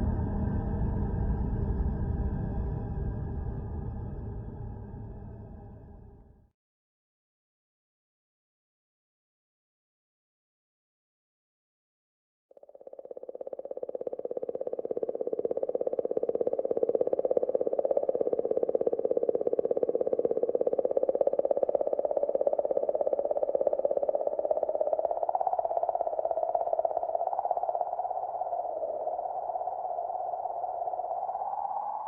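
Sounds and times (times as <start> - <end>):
steady pulsing drone: 0.0 - 6.3.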